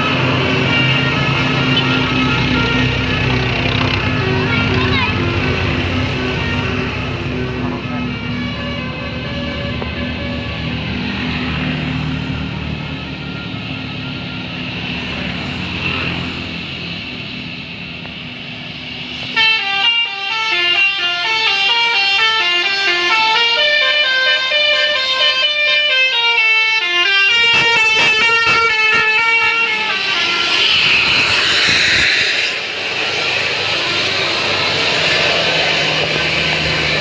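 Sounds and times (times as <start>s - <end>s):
bus horn playing melody: 0.4s - 11.1s, 19.4s - 31.2s, 33.6s - 34.8s.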